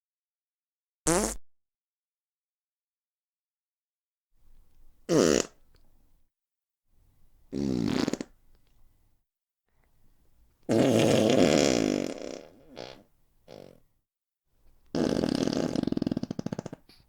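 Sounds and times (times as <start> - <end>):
fart sounds: 1.1 - 1.4, 5.1 - 5.6, 7.6 - 8.4, 10.7 - 13.8, 14.9 - 17.0.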